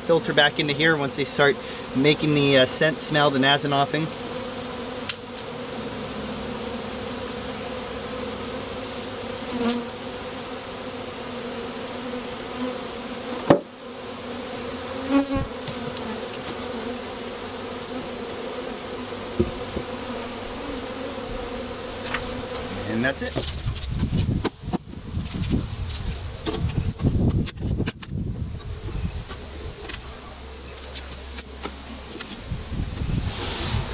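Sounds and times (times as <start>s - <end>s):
honeybees buzzing: 0.0s - 33.9s
knocks on hive: 13.4s - 13.7s, 19.3s - 20.0s.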